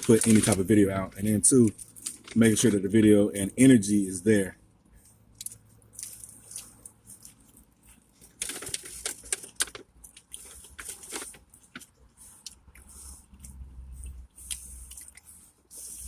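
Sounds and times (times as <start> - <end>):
person chewing food: 4.9 - 8.4, 9.8 - 16.0.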